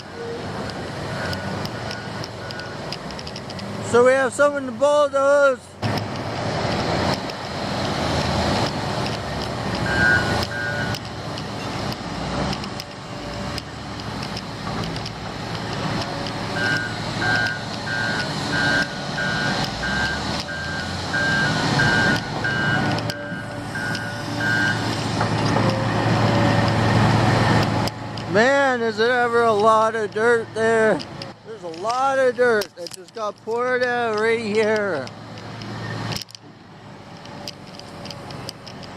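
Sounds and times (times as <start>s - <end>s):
diesel construction machinery running: 0.0s - 38.9s
reversing alarm beeping: 1.1s - 2.8s, 9.8s - 11.0s, 16.6s - 24.9s.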